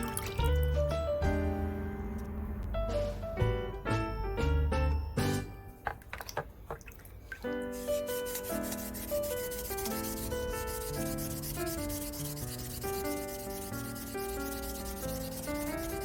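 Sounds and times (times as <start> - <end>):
background music with held notes: 0.0 - 6.0.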